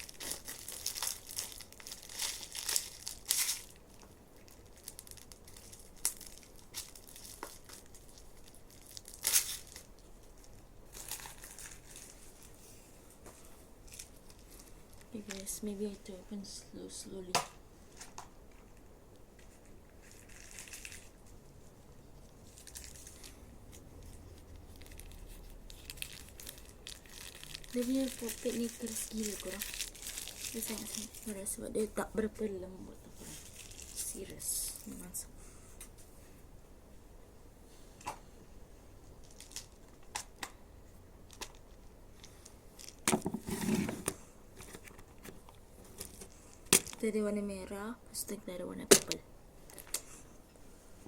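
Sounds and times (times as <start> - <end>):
packaging crinkling and tearing: 0.0 - 12.6, 19.6 - 21.4, 22.4 - 31.8, 33.3 - 35.0, 39.2 - 40.5.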